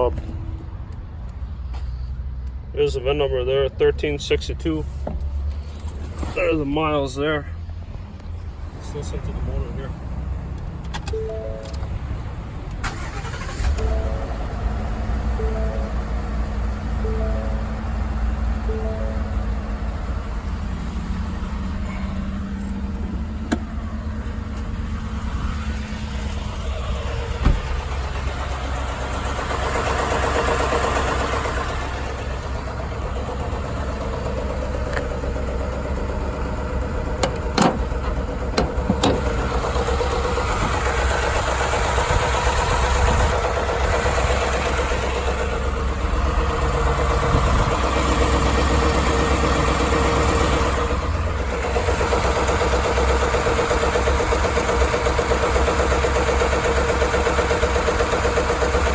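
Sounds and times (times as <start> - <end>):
engine idling: 12.8 - 58.9.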